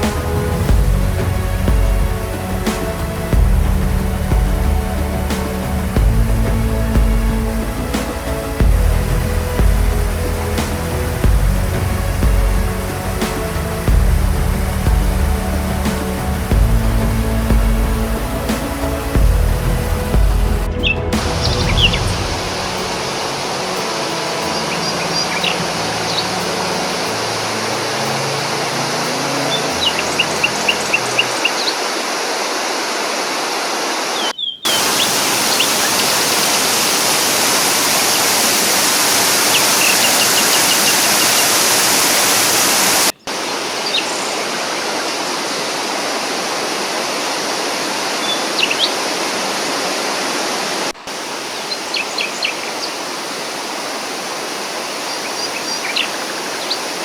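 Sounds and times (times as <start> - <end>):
waterfall rushing: 0.0 - 57.0
small birds chirping: 34.2 - 45.3, 51.3 - 53.9, 54.7 - 57.0.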